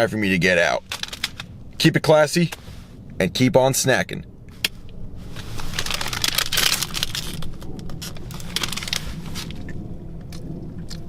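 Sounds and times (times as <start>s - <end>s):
steady low hum: 0.0s - 11.0s
crinkling rustling handling noise: 0.2s - 3.0s, 4.5s - 9.8s.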